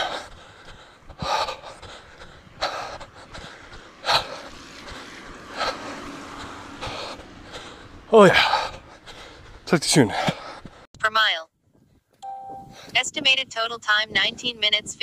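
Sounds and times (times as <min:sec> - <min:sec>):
person breathing hard: 0:00.0 - 0:10.9.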